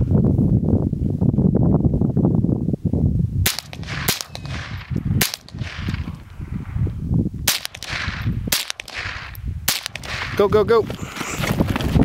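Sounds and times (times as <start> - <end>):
low rumbling noise: 0.0 - 11.1
gunshots with echo: 3.5 - 6.3, 7.5 - 10.6.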